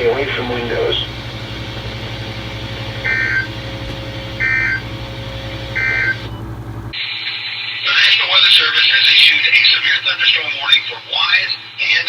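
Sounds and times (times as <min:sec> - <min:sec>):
warbling data tone bursts: 0:00.0 - 0:06.6
receiver hum: 0:00.0 - 0:12.0.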